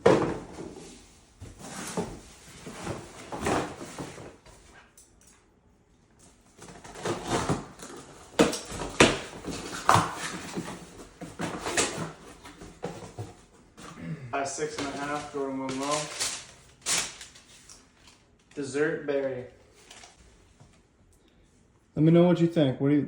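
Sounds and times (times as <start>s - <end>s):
packing paper rustling: 14.6s - 18.7s, 19.7s - 20.4s.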